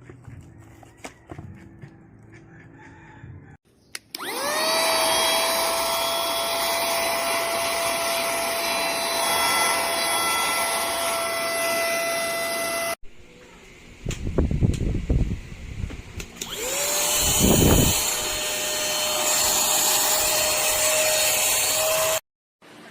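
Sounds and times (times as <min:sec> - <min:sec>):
handheld vacuum cleaner whine: 0:04.1 - 0:13.0, 0:16.4 - 0:22.2.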